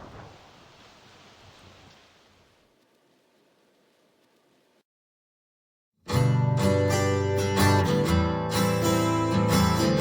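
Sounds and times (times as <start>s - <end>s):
thunder rumbling: 0.0s - 3.3s
rain hissing: 0.0s - 4.8s.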